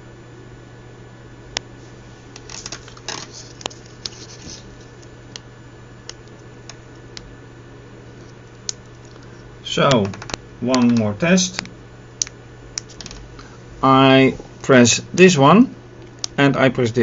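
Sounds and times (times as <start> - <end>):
sharp clicks: 8.6 - 13.2.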